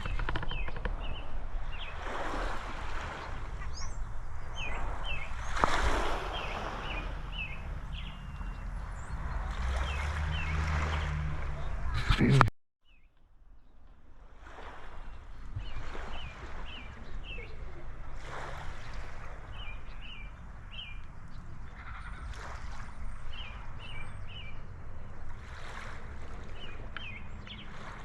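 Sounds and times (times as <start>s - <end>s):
bird chirping: 0.0s - 2.0s, 3.2s - 13.1s, 15.1s - 17.9s, 18.8s - 25.0s, 26.5s - 27.9s
small waves washing on shore: 0.0s - 12.4s, 14.0s - 28.0s.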